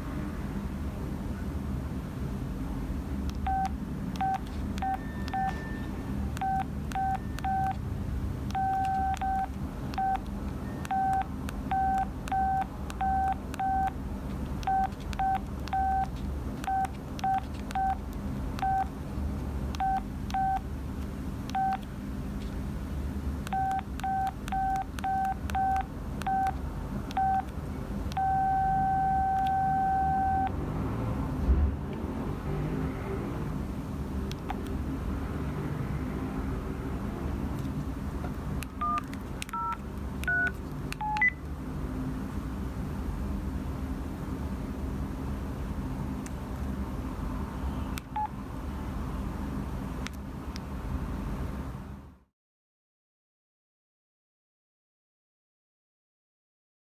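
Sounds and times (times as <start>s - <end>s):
cellphone ringtone beeps: 3.5s - 7.8s, 8.6s - 13.9s, 14.7s - 16.1s, 27.2s - 27.5s, 28.2s - 30.5s.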